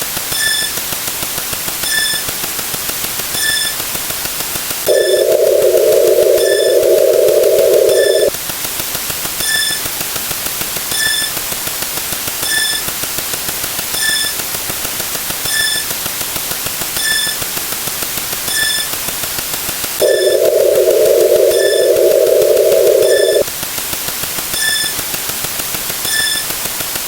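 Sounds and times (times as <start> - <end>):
loud coarse hum: 4.9 - 8.3, 20.0 - 23.4
short high beeps: 4.9 - 8.3, 20.0 - 23.4
static hiss: 4.9 - 8.3, 20.0 - 23.4.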